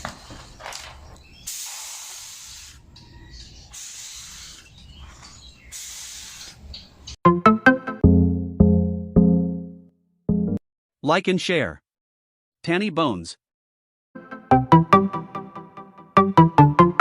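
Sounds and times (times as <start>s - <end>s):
compressed air hissing: 1.5s - 2.9s, 3.7s - 4.8s, 5.6s - 6.6s.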